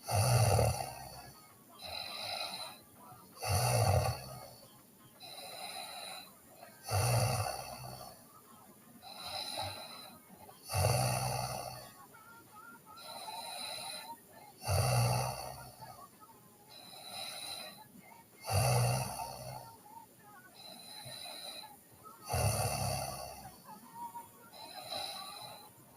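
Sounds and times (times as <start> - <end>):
person snoring: 0.0 - 8.2, 9.0 - 12.0, 12.9 - 16.0, 16.7 - 19.8, 20.6 - 23.7, 24.5 - 25.8
soft breath: 0.5 - 3.2, 4.1 - 6.8, 11.5 - 14.5, 16.7 - 25.9.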